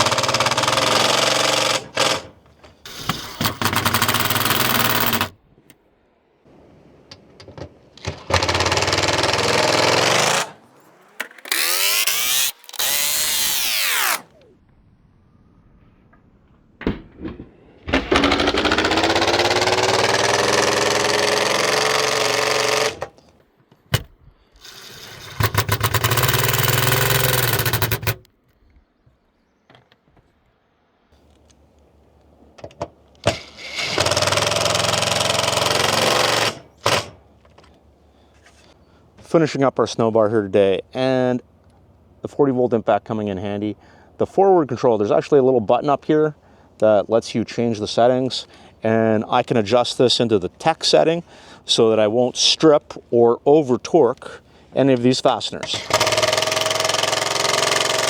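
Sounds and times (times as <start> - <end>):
impact driver hammering bolts: 0.0 - 5.7, 8.0 - 10.5, 16.8 - 23.3, 23.9 - 28.3, 32.6 - 37.6, 55.6 - 58.0.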